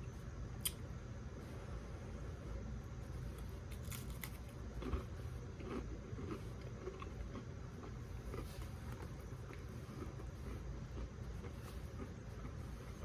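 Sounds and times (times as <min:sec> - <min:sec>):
person chewing crackers: 0:03.3 - 0:13.0.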